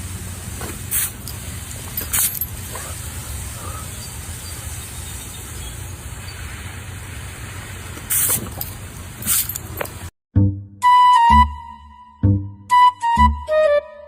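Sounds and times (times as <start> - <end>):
bright hissing bursts: 0.0 - 9.6
low rumbling hiss: 0.0 - 10.1.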